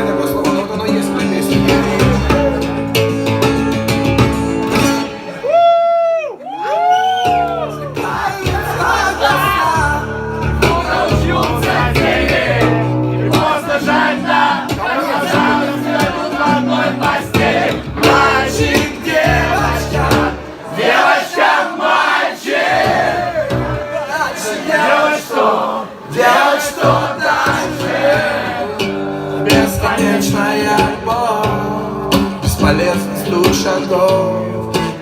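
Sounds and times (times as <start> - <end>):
live band playing: 0.0 - 5.4, 7.2 - 21.0, 22.7 - 24.0, 26.8 - 35.0
drum hits: 17.0 - 20.4.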